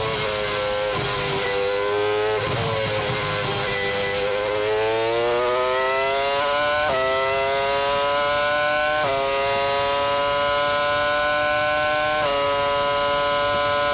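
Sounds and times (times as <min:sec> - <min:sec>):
racing car engine accelerating: 0:00.0 - 0:13.9.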